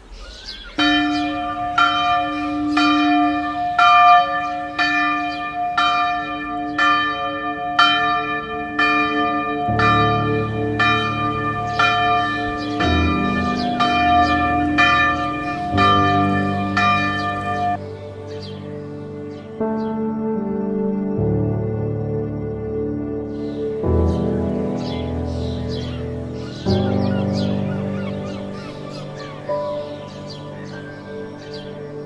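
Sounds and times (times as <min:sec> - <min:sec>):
bell-like notes: 0:00.8 - 0:32.0
deep bass chord: 0:19.3 - 0:30.4.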